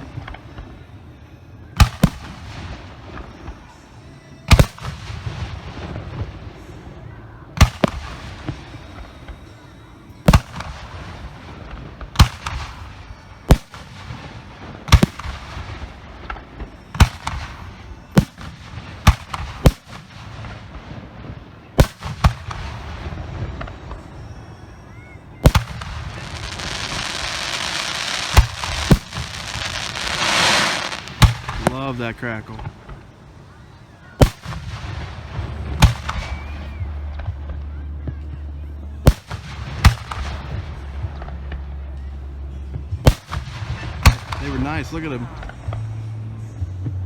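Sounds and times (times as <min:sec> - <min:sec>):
firework shells booming: 0:10.3 - 0:24.4, 0:25.4 - 0:33.4, 0:34.2 - 0:37.6, 0:39.1 - 0:41.9
firework crackle: 0:10.3 - 0:37.7, 0:39.0 - 0:42.0, 0:43.0 - 0:46.0.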